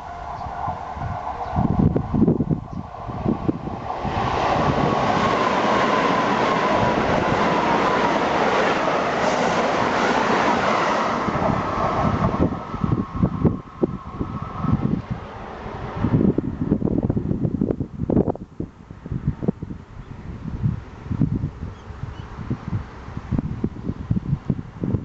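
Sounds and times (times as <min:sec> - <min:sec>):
train wheels rushing on rail: 0:00.0 - 0:17.2.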